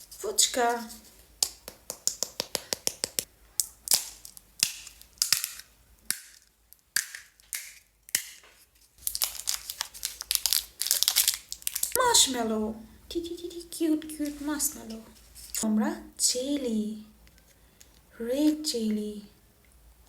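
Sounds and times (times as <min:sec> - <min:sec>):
crisp shells cracking: 0:01.2 - 0:12.0
crinkly rustle: 0:08.6 - 0:12.0.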